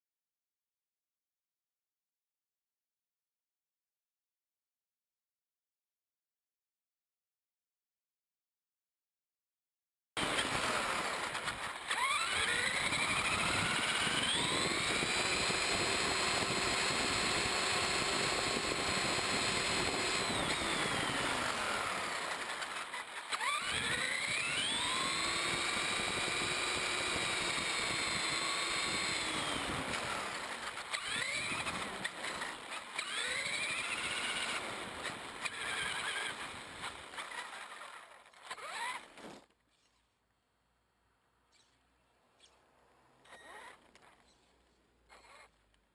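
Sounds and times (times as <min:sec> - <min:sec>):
toy truck electric motor whining: 0:10.2 - 0:40.0, 0:42.4 - 0:45.8.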